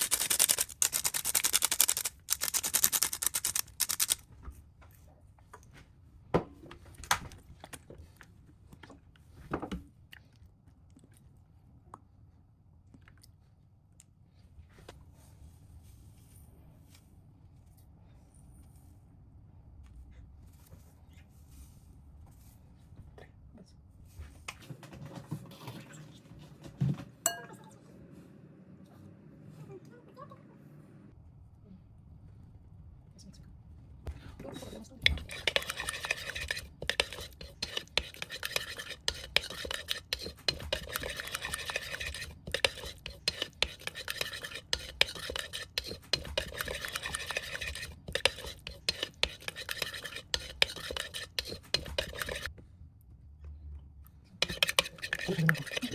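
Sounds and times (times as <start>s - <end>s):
utensil scraping in a dish: 0.0s - 4.2s, 34.5s - 52.5s, 54.4s - 55.9s
kitchenware clinking: 27.3s - 27.7s.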